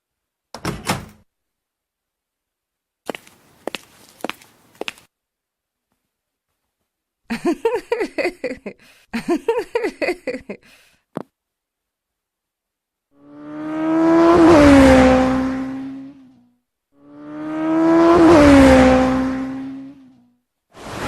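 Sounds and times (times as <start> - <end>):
car passing by: 13.2 - 16.2, 17.1 - 20.2, 20.8 - 21.0.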